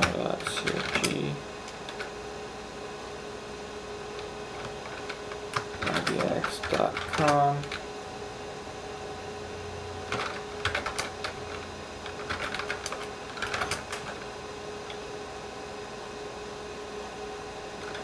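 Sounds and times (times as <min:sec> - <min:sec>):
computer hum: 0:00.0 - 0:18.0
keyboard typing clicks: 0:04.6 - 0:07.8, 0:10.1 - 0:14.2.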